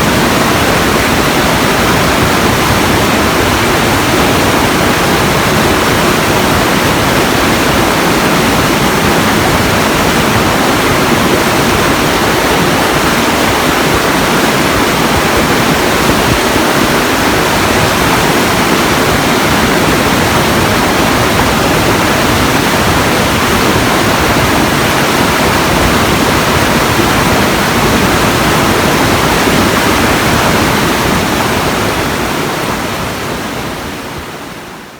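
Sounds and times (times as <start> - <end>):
rushing water: 0.0 - 34.9.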